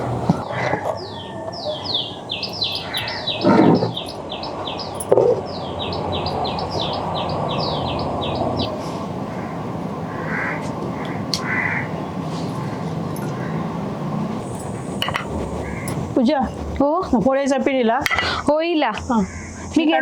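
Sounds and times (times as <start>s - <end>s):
bird calling high slurred notes: 0.4s - 11.9s, 14.4s - 19.8s
steady low hiss: 13.8s - 20.0s.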